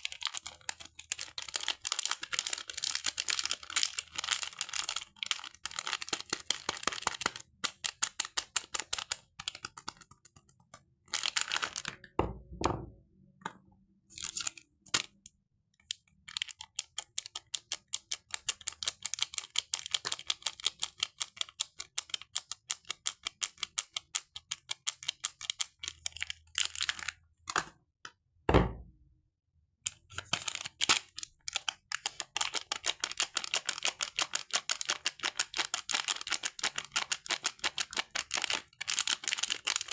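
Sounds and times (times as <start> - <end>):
packaging crackling and clicking: 0.0 - 10.3, 11.1 - 12.1, 29.9 - 39.9.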